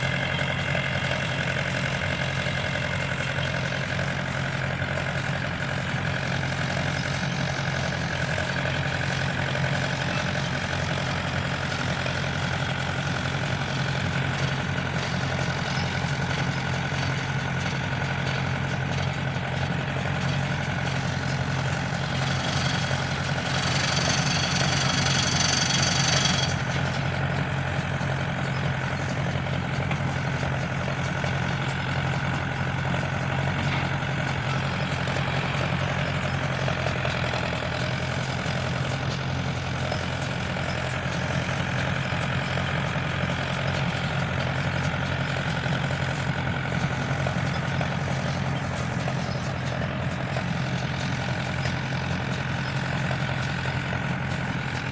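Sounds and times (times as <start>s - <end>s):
tractor engine running: 0.0s - 54.9s.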